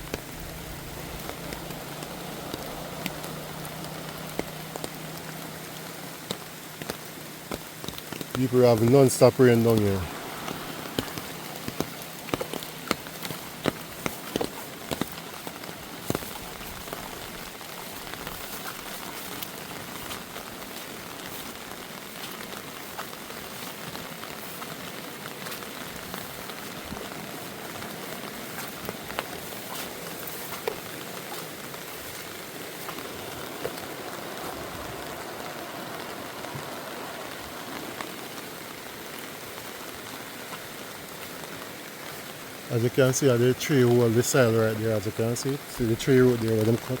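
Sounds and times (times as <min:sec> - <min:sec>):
drops ticking close by: 0:00.0 - 0:40.7
steady rain falling: 0:00.0 - 0:47.0.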